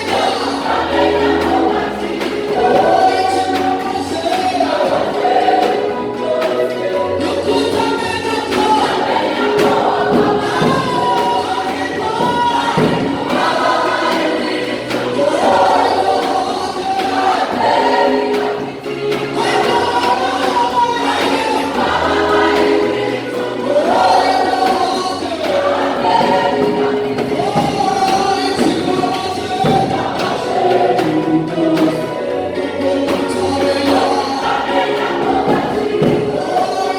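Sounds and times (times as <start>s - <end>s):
choir singing gospel song: 0.0s - 36.9s.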